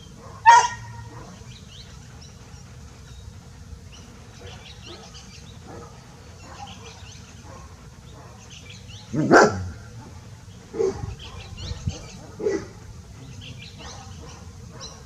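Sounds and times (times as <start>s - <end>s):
bird chirps: 0.0s - 15.0s
dog barking: 0.2s - 1.5s, 4.4s - 8.5s, 9.1s - 12.8s, 13.8s - 15.0s.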